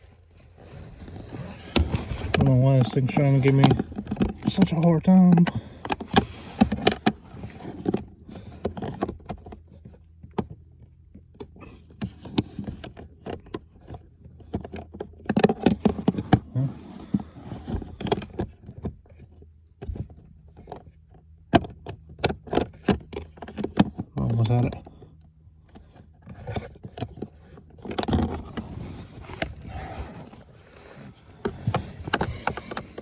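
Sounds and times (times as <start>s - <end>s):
filter frame scraping plastic housing: 1.0s - 9.0s, 25.8s - 33.0s.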